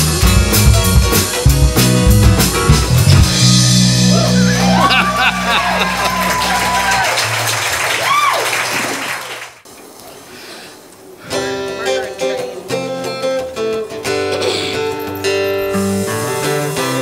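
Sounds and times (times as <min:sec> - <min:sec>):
acoustic guitar strumming: 0:00.0 - 0:06.0, 0:11.3 - 0:17.0.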